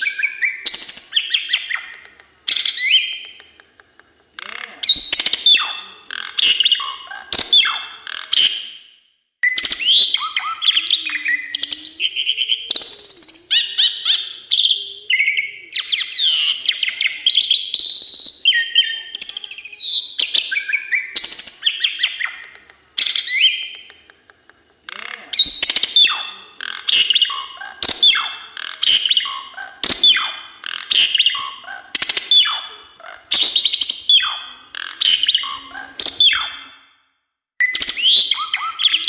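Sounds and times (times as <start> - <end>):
starling singing: 0.0 - 8.7, 9.4 - 24.1, 24.7 - 36.8, 37.6 - 39.0.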